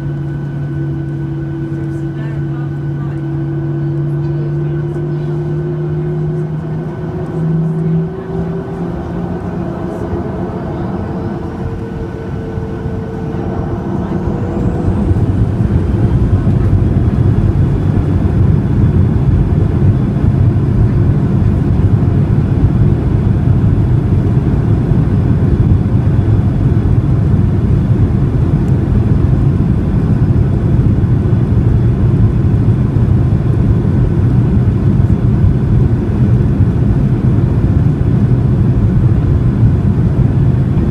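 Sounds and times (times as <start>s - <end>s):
jet engines spooling up: 4.9s - 39.9s.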